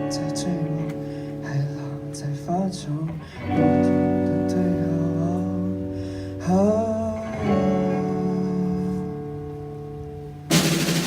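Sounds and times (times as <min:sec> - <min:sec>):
electric guitar chords ringing: 0:00.0 - 0:11.0
gliding guitar melody: 0:00.0 - 0:11.0.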